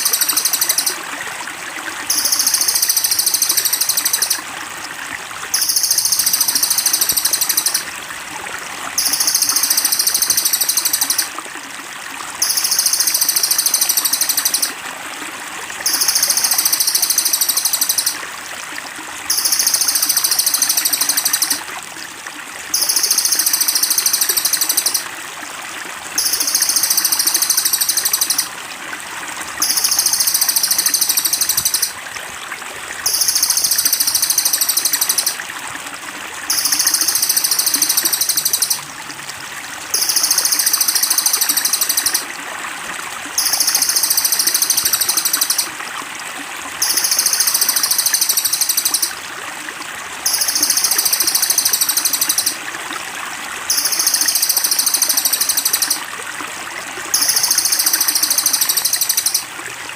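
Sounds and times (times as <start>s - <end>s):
stream water running: 0.0s - 59.9s.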